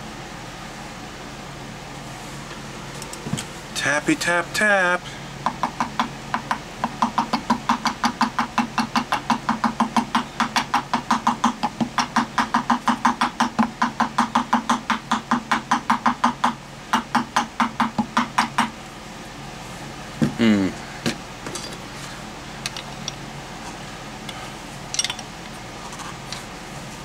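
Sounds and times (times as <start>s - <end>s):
hammer tapping on metal: 5.4s - 18.7s.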